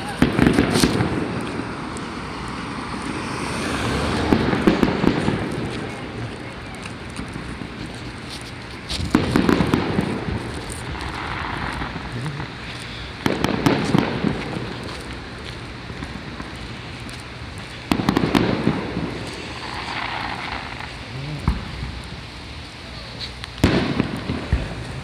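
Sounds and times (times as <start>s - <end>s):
fireworks shells bursting: 0.0s - 3.2s.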